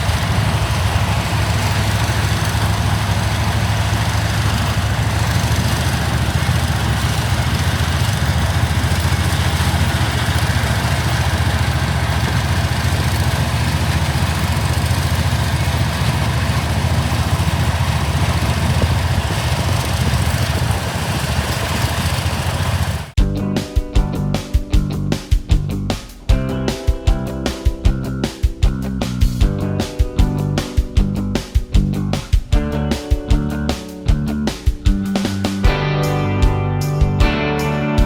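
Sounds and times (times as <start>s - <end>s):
machinery engine running: 0.0s - 38.0s.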